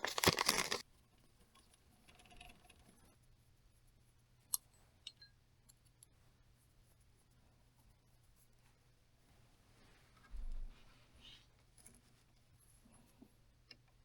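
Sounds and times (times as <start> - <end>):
soft rustle: 6.0 - 13.7.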